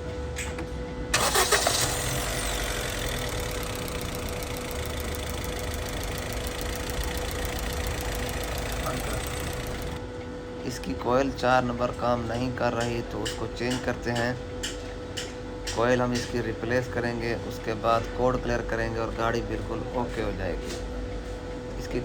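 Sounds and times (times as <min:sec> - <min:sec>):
car engine starting and running: 0:01.1 - 0:10.0.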